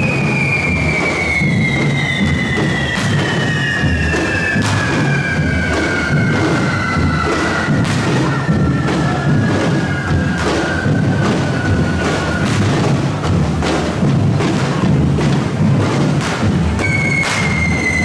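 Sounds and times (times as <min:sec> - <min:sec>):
long falling whistle: 0:00.0 - 0:13.0, 0:16.8 - 0:18.0
drumming: 0:00.0 - 0:18.0
firework bangs: 0:00.0 - 0:18.0.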